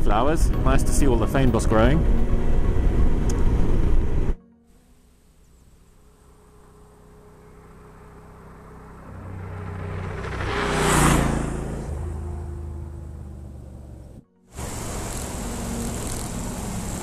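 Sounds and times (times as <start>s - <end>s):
motorcycle riding past: 5.9s - 17.0s.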